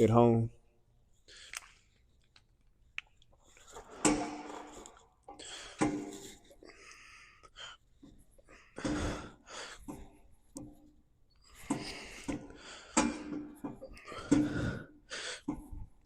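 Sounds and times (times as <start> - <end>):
man breathing sharply: 5.3 - 10.3, 11.4 - 15.7.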